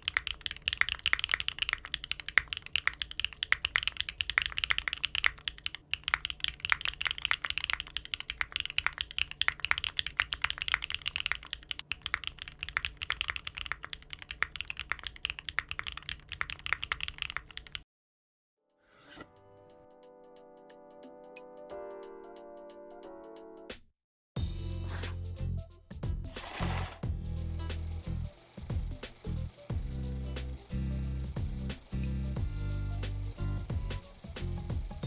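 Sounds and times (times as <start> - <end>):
fast mechanical keyboard typing: 0.0 - 17.8.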